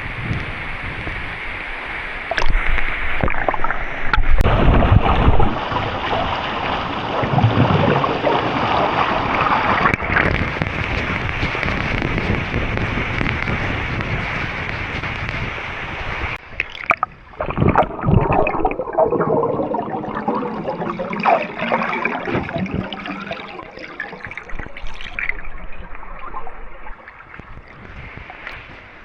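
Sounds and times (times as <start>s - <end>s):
waterfall rushing and splashing: 4.5s - 16.4s, 20.0s - 24.6s.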